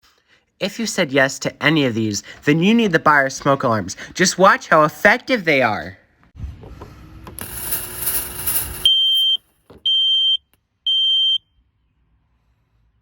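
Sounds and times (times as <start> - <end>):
hiss: 7.4 - 8.9
smoke alarm high beeps: 8.4 - 11.4.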